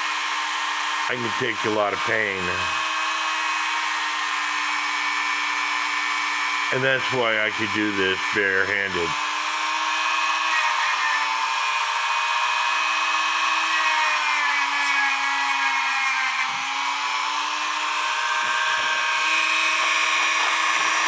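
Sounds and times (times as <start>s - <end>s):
rotary tool wire brush whine: 0.0s - 21.0s.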